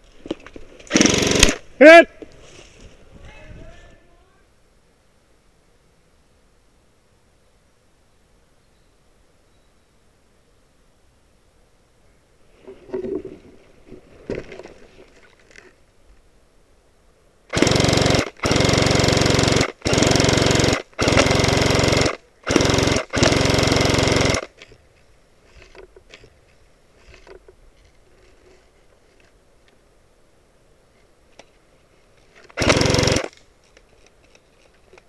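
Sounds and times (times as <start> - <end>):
airsoft rifle firing bursts: 0.9 - 1.6, 17.5 - 24.7, 32.6 - 33.4.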